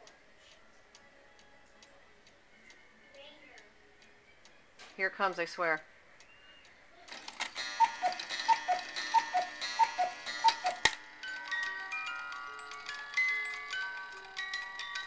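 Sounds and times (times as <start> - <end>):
cuckoo clock calls: 6.2 - 15.0
music box tinkling tune: 7.1 - 15.0
ringing tune: 7.6 - 15.0.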